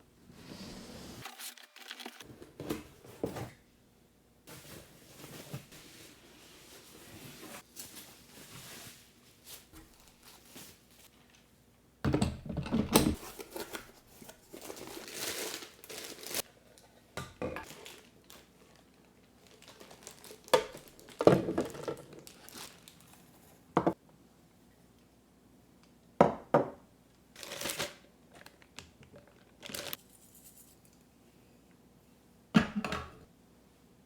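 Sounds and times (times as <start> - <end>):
plastic and paper crinkling: 1.2 - 2.3, 4.5 - 11.4, 13.2 - 16.9, 17.6 - 23.6, 27.4 - 30.0.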